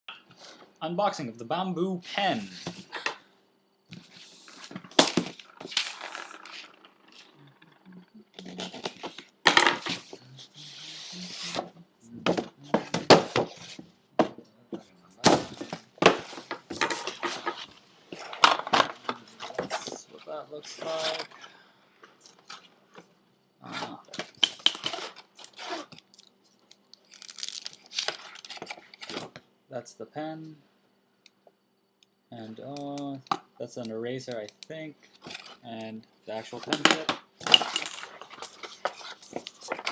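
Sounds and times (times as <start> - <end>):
packaging rustling and scraping: 4.0 - 7.4, 15.3 - 21.5, 23.7 - 29.3, 35.0 - 35.6, 36.5 - 39.9.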